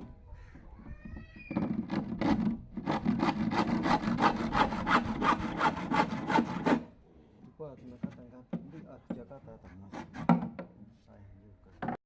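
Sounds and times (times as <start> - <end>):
hand saw cutting wood: 1.9 - 6.9, 9.8 - 10.4.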